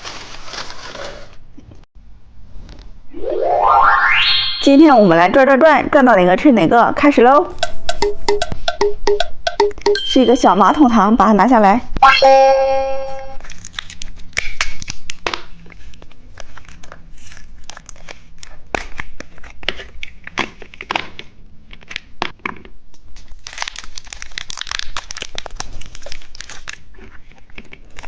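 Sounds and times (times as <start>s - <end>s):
plastic packaging crinkling and tearing: 0.0s - 1.4s, 23.2s - 28.0s.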